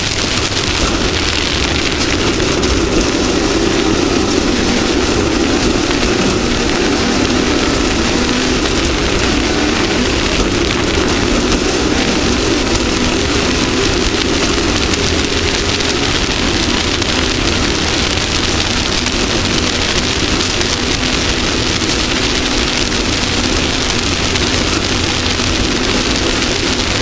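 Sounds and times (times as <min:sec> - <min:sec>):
race vehicle engine running: 0:00.0 - 0:27.0
wind and rushing dirt hiss: 0:00.0 - 0:27.0.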